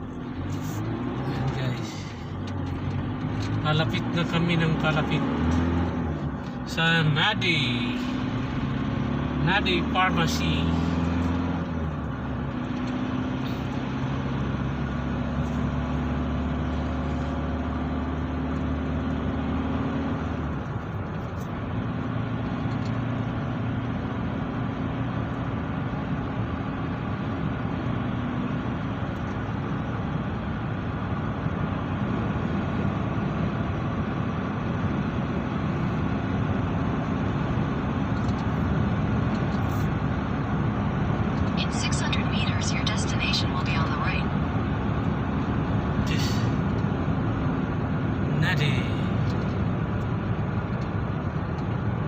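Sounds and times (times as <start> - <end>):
car engine and road noise: 0.0 - 52.0.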